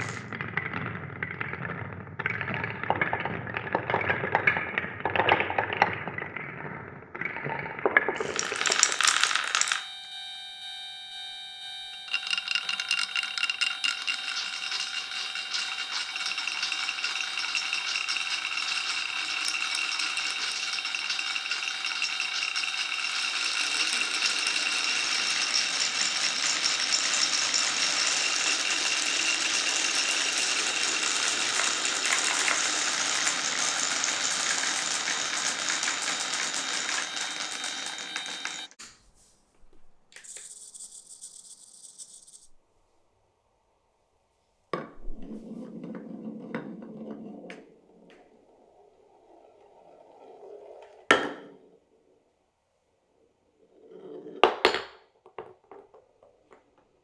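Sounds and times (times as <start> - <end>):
marbles clattering on wooden run: 0.0 - 10.0, 12.0 - 38.7, 40.2 - 42.6.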